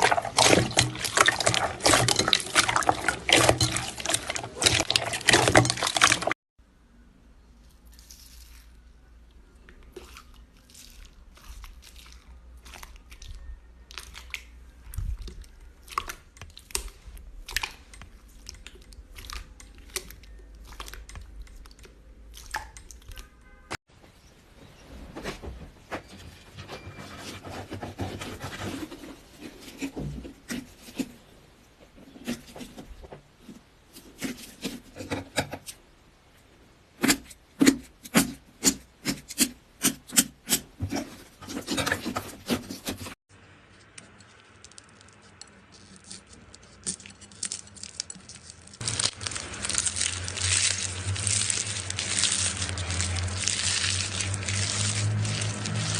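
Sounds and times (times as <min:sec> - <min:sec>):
slime squelching and crackling: 0:00.0 - 0:06.4, 0:07.8 - 0:23.7, 0:44.1 - 0:55.9
rough rubbing noise: 0:48.8 - 0:55.9.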